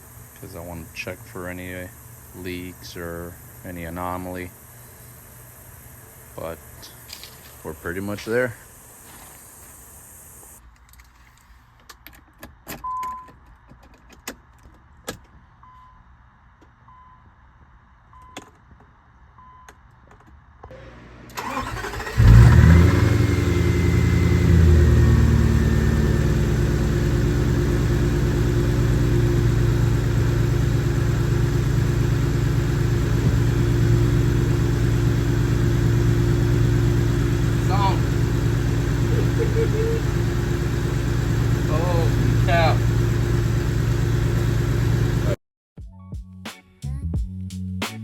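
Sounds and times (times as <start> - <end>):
car engine starting and idling: 0.0 - 10.6, 20.7 - 45.4.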